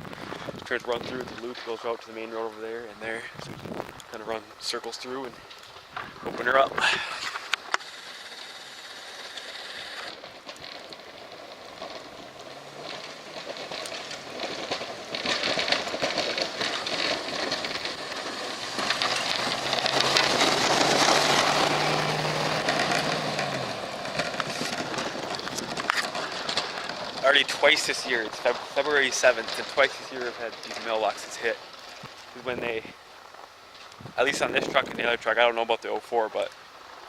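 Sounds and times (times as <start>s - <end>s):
snowplow scraping snow: 6.0s - 37.0s
truck engine hum: 6.6s - 34.4s.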